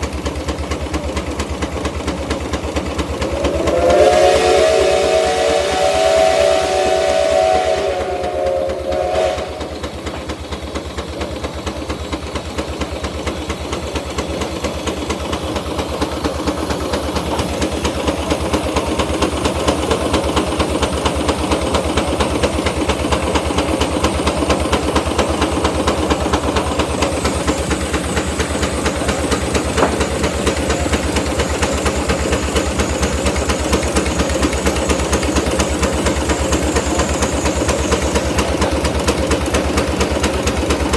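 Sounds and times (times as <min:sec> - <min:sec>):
steam engine exhaust beat and hiss: 0:00.0 - 0:40.9
steam engine whistle: 0:02.9 - 0:10.5, 0:21.9 - 0:40.9.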